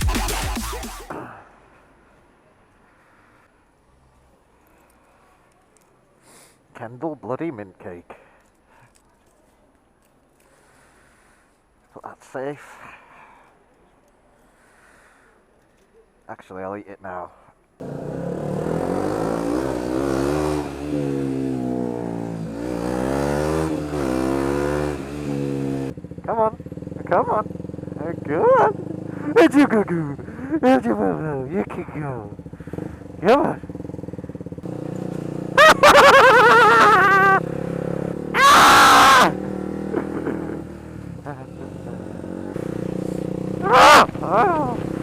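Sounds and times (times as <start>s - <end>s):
motorcycle engine accelerating: 17.8s - 45.0s
man screaming: 35.6s - 37.4s, 38.3s - 39.4s, 43.6s - 44.8s.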